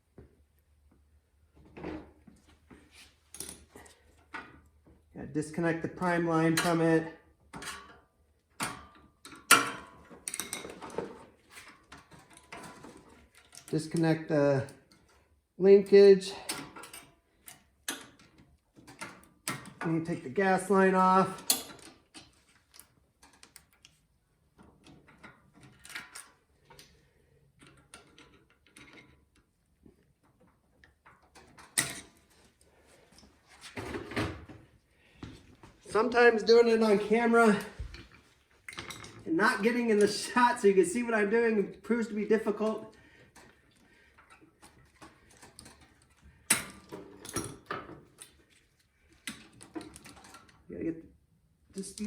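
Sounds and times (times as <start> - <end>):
hand tools and metal parts knocking: 7.5 - 13.8.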